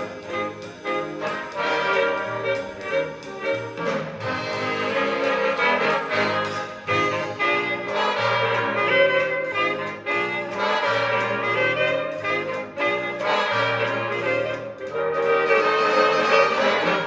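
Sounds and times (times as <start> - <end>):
instrumental jazz with brass: 0.0 - 17.0.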